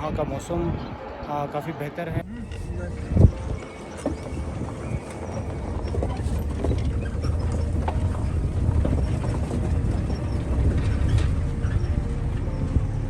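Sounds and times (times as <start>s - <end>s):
vehicle low rumble: 2.2s - 13.0s
knocks and rattles: 3.2s - 13.0s.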